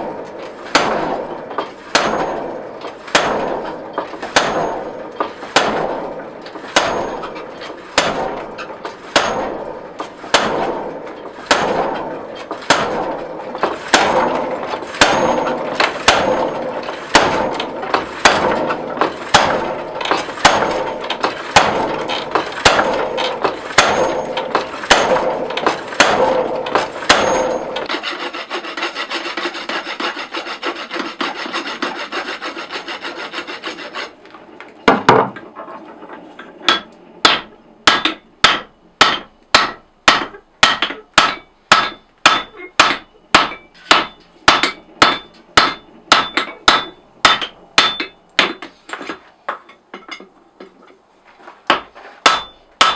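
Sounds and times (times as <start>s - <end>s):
hammer striking steel: 0.0s - 28.0s, 36.6s - 50.3s, 51.7s - 52.9s
rasping scrape: 19.9s - 34.2s.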